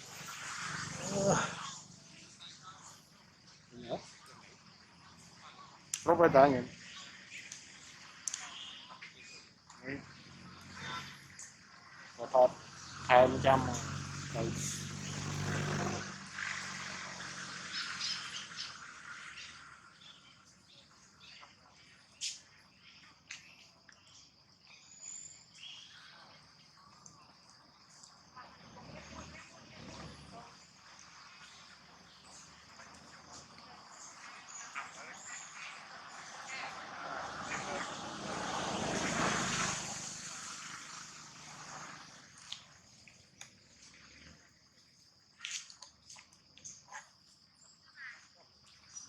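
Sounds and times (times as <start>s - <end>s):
insects trilling: 0.0s - 49.0s
passing engine: 12.1s - 19.8s, 34.1s - 42.7s.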